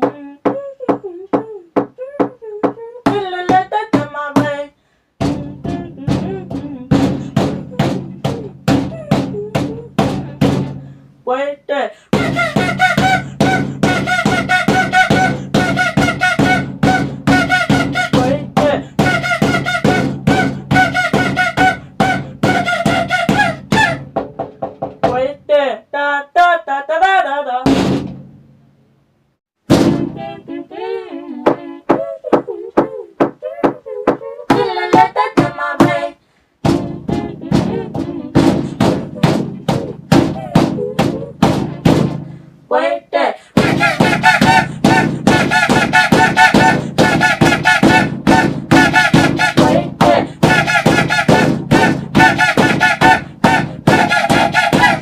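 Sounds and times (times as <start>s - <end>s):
heavy bass beat: 43.6s - 55.0s.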